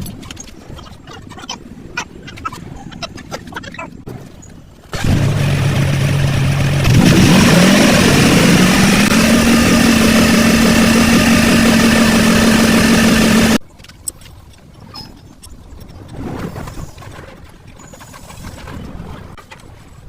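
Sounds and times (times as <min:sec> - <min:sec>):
loud motor running: 0:05.0 - 0:13.6.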